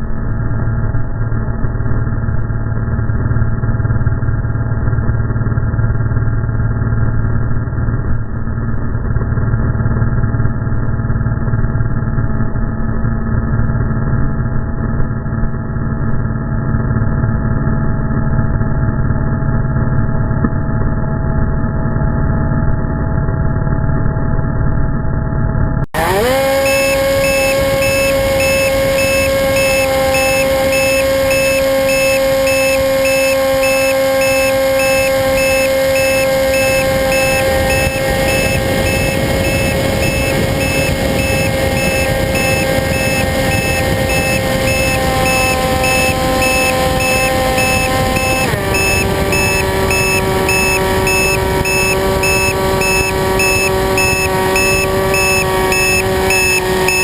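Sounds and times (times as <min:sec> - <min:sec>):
model airplane motor droning: 0:26.0 - 0:57.0.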